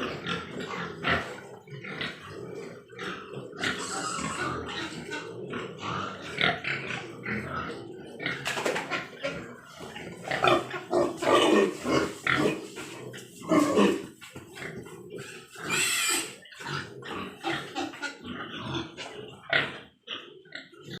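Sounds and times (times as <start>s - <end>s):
pigs calling: 0.0s - 21.0s
shrill pig squeal: 2.9s - 6.6s, 15.2s - 19.2s.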